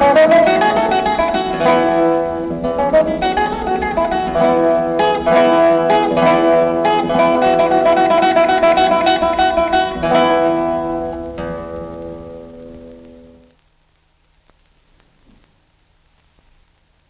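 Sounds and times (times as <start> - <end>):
plucked string instrument music: 0.0 - 13.5.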